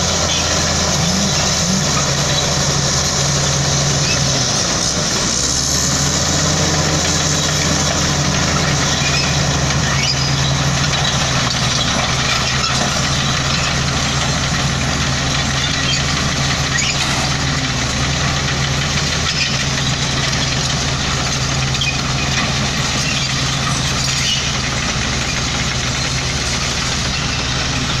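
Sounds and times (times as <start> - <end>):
heavy diesel engine running: 0.0 - 28.0.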